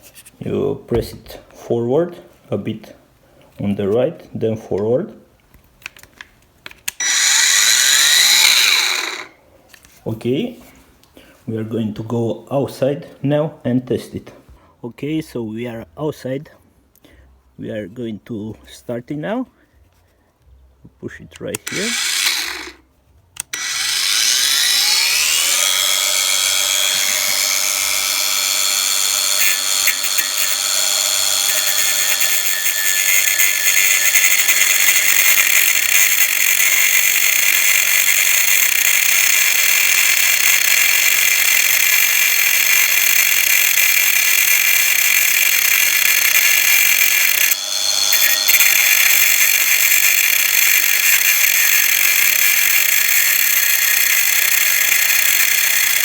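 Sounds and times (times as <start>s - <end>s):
angle grinder whining: 7.0s - 9.4s, 21.6s - 22.8s, 23.4s - 56.0s.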